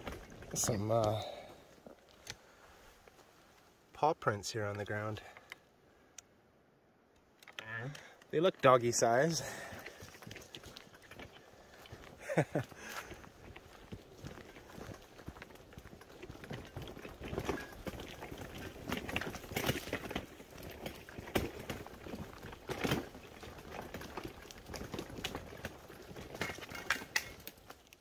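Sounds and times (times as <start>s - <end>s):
wagon clattering over ground: 0.0s - 1.6s, 8.4s - 28.0s
footsteps on dirt trail: 8.9s - 27.6s.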